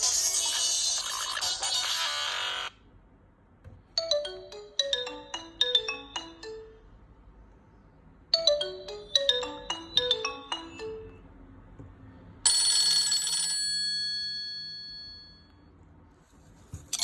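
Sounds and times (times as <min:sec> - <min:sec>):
loud dense ringtone: 0:04.0 - 0:07.1, 0:08.4 - 0:11.4
mobile phone ringtone melody: 0:04.0 - 0:07.1, 0:08.3 - 0:11.4.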